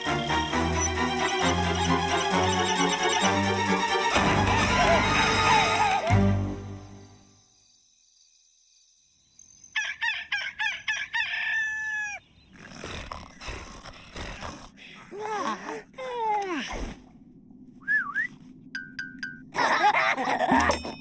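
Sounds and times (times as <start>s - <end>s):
cartoon clucking calls: 0.0s - 6.2s.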